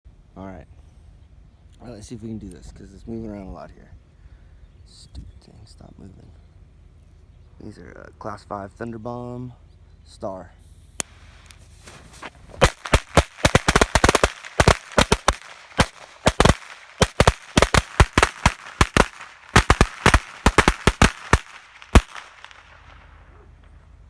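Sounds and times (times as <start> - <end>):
firecrackers banging: 11.0 - 23.2.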